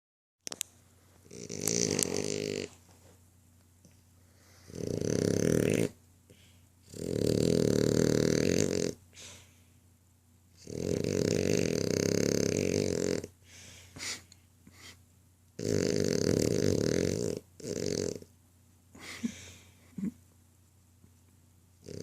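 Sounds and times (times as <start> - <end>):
dog snoring: 1.2 - 2.8, 4.4 - 6.0, 6.8 - 9.0, 10.5 - 13.4, 15.6 - 18.3, 21.8 - 22.0.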